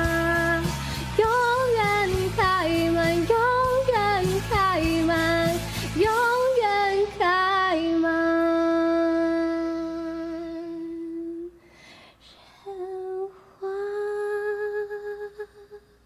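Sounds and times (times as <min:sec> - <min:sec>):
breath: 0:00.7 - 0:01.1, 0:05.6 - 0:06.0, 0:11.6 - 0:12.7.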